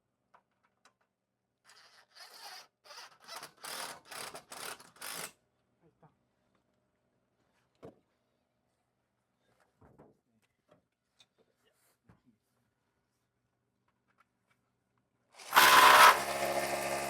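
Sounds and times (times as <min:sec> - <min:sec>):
rasping scraping strokes: 0:15.4 - 0:16.3.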